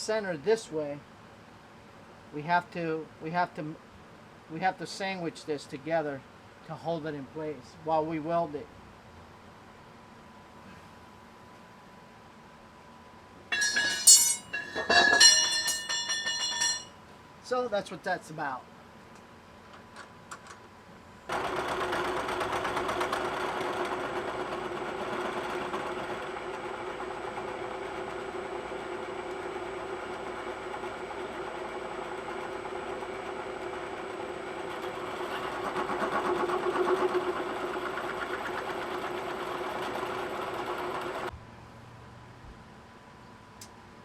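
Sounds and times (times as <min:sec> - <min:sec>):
metalworking machine running: 0:13.5 - 0:16.9.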